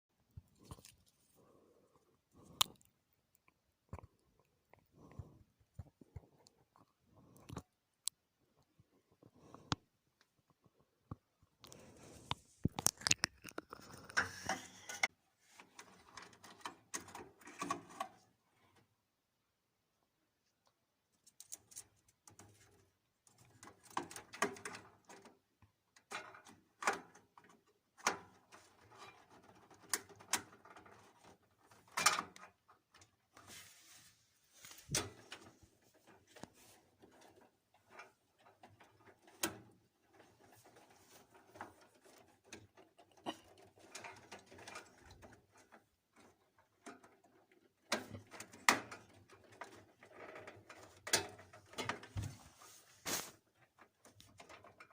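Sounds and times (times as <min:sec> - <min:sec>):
small clicks and knocks of hardware: 0:05.1 - 0:18.2, 0:21.1 - 0:33.2.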